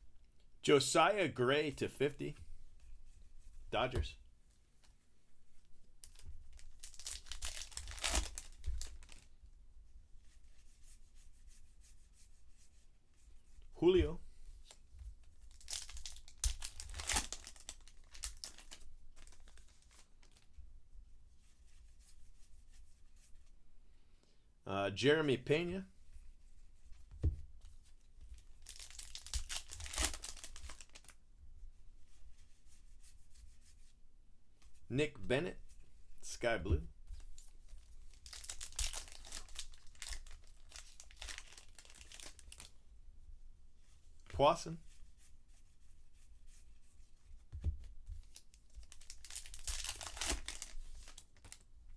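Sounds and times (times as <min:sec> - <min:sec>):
wrapper crinkling: 0:06.0 - 0:09.3, 0:15.5 - 0:20.4, 0:28.4 - 0:31.2, 0:37.3 - 0:42.7, 0:48.2 - 0:51.6
cards rustling: 0:48.2 - 0:51.6.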